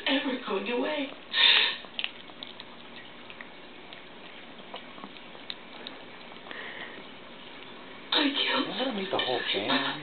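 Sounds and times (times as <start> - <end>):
dog mouth smacking and licking: 1.0 - 7.9.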